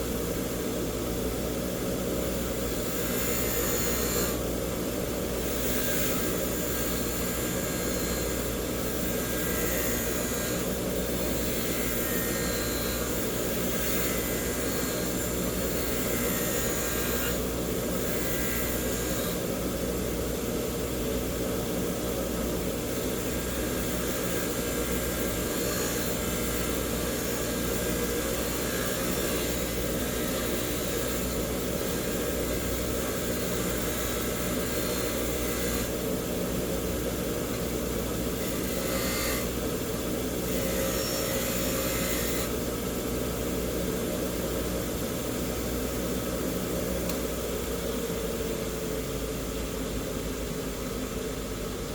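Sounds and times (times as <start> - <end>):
bench grinder motor hum: 2.6 - 4.5, 5.3 - 20.0, 22.9 - 43.1.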